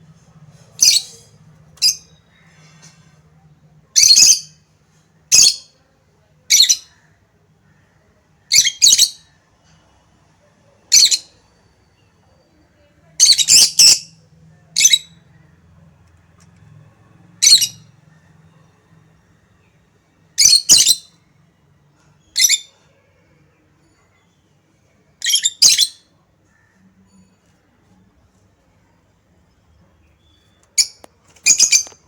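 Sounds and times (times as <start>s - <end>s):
lovebirds chirping and squawking: 0.6s - 3.2s, 13.2s - 14.2s, 17.4s - 18.0s, 20.4s - 21.2s, 22.0s - 22.8s, 25.2s - 26.8s, 30.2s - 32.0s.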